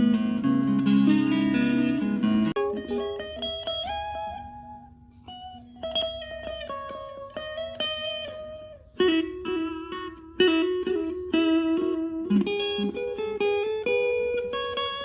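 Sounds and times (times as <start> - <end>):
electric guitar melodic line: 0.0 - 15.0.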